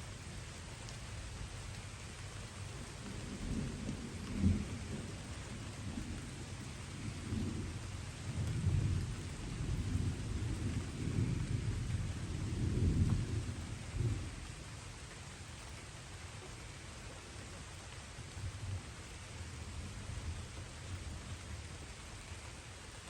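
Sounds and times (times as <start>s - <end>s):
light rain falling: 0.0s - 23.0s
distant thunder rolling: 3.0s - 14.5s.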